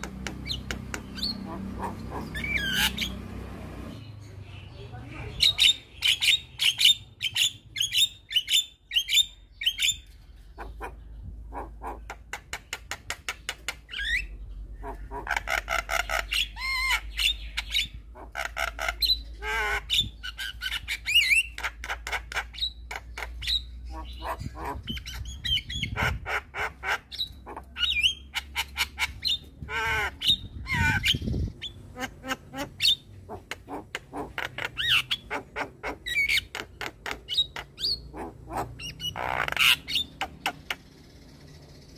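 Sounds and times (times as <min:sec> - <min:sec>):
bird singing varied song: 0:00.0 - 0:41.9.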